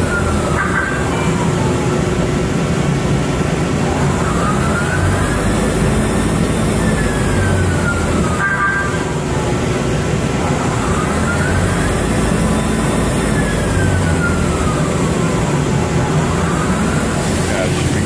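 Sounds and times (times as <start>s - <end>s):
faint machine whine: 0.0s - 18.0s
lathe running: 0.0s - 18.0s.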